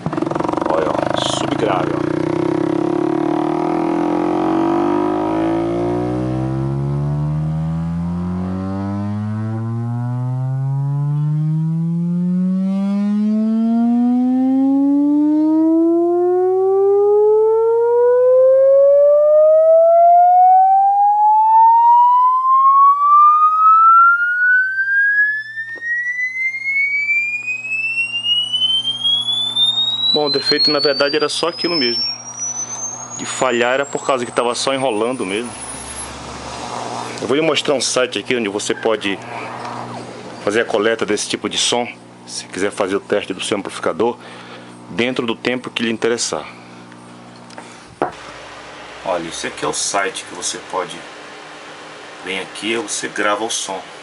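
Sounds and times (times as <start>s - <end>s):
rising sine-wave tone sweep: 0.0s - 37.8s.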